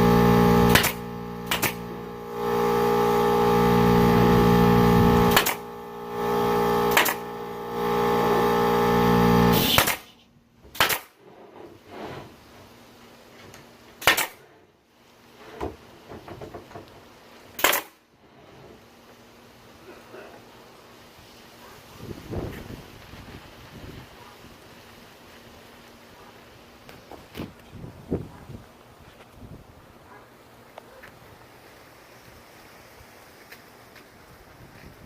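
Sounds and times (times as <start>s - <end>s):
air compressor motor running: 0.0s - 9.8s
pneumatic denailer cracks: 0.6s - 1.9s, 5.3s - 5.7s, 6.9s - 7.3s, 9.5s - 11.2s, 14.0s - 14.4s, 17.6s - 18.0s.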